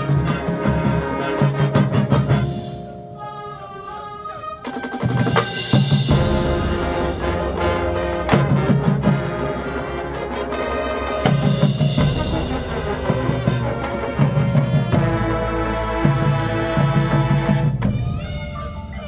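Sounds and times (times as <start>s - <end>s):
brass chords: 0.0s - 18.9s
pounding low drums: 5.5s - 19.0s.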